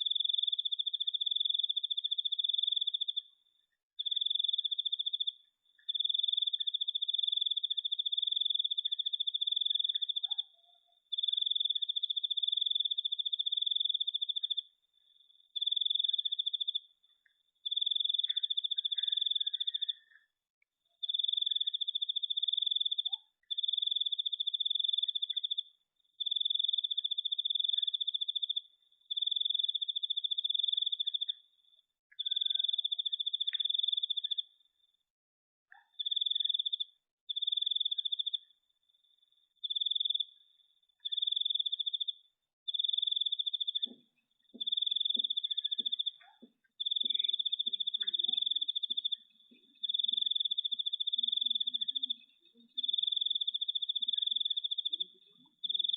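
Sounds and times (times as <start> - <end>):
cricket trilling: 17.6 - 20.2, 21.0 - 35.0, 35.8 - 38.5, 39.3 - 40.4, 41.0 - 55.9.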